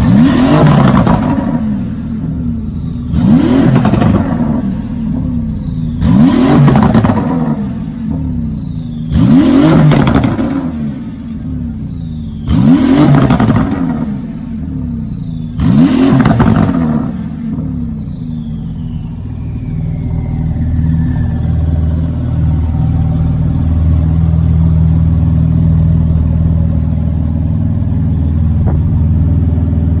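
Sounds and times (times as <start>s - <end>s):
car engine revving: 0.0s - 30.0s
turbo whistle: 17.0s - 22.1s.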